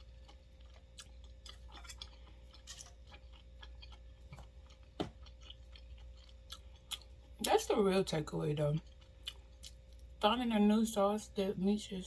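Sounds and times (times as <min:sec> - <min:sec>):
person chewing food: 0:00.0 - 0:07.4, 0:08.8 - 0:10.2.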